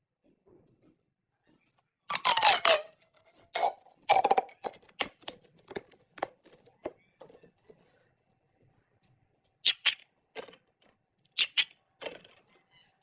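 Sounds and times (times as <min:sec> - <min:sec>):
plastic pop tubes crackling: 0:02.1 - 0:06.6, 0:09.6 - 0:10.5, 0:11.3 - 0:12.2.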